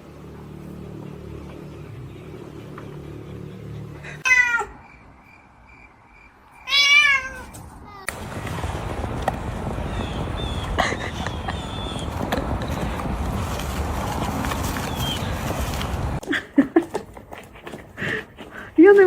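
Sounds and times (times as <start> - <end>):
cat meowing: 4.2 - 4.8, 6.6 - 7.5.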